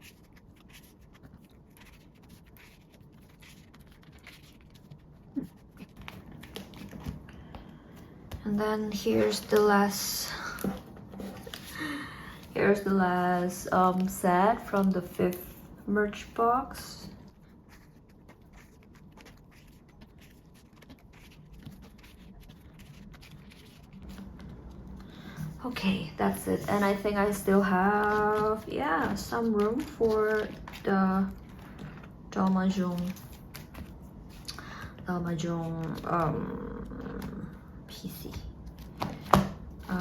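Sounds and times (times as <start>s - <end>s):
plastic sleeves rustling: 0.0s - 40.0s.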